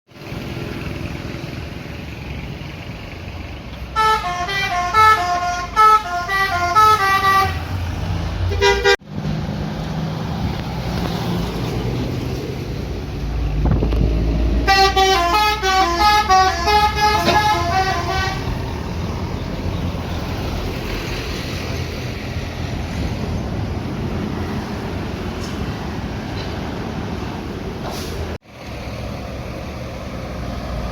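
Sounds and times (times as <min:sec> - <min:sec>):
diesel engine rumbling: 0:00.1 - 0:30.9
musical air horn melody: 0:04.0 - 0:07.7, 0:08.5 - 0:09.0, 0:14.7 - 0:18.5.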